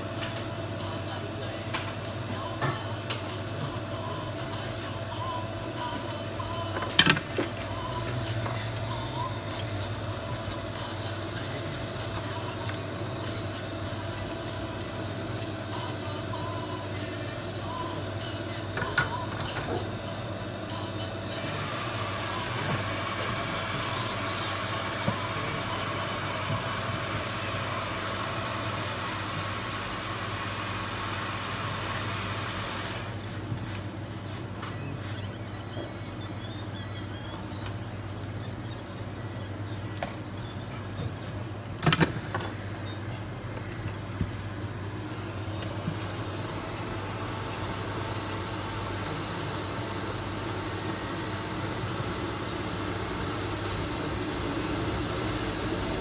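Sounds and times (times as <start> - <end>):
background hum: 33.1 - 56.0.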